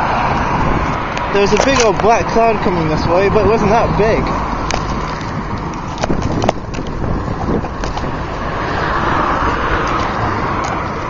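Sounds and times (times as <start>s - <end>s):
car rumble inside cabin: 2.2s - 11.0s.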